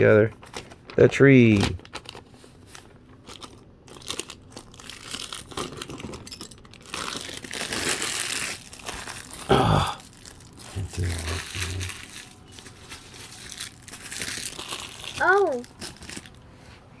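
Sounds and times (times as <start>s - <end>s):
plastic bag crinkling: 0.3s - 16.6s
person speaking: 10.7s - 12.0s, 15.2s - 15.7s.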